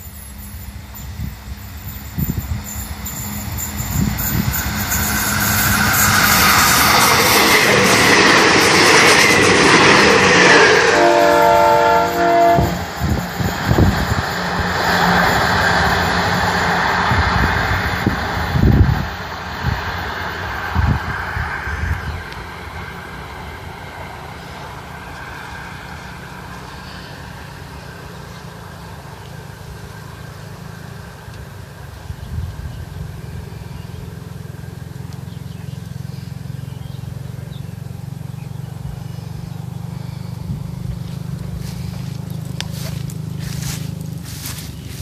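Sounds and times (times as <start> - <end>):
train passing: 0.0 - 45.0
train horn blast: 10.0 - 13.9
steady low rumble: 12.0 - 24.8, 38.7 - 45.0.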